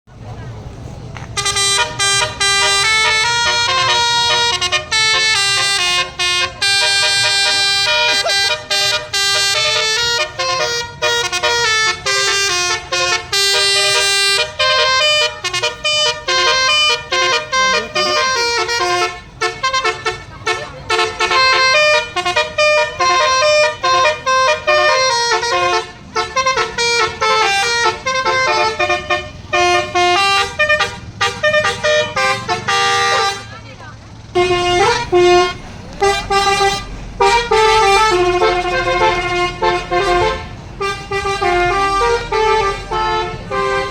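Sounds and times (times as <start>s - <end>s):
multi-tone musical bus horn: 1.1s - 43.9s.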